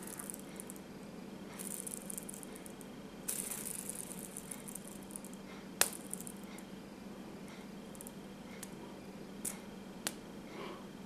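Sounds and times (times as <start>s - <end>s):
fidget spinner bearing whirring: 0.0s - 0.8s, 1.5s - 6.7s.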